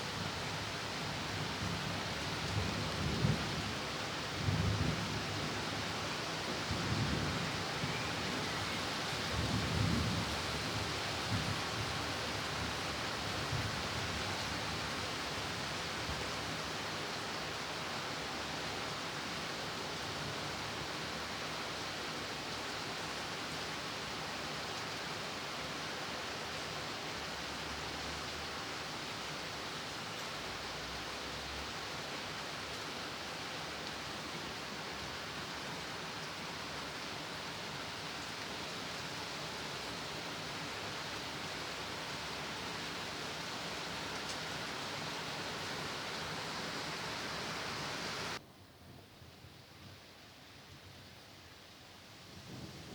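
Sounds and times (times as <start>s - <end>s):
steady rain hiss: 0.0s - 52.9s.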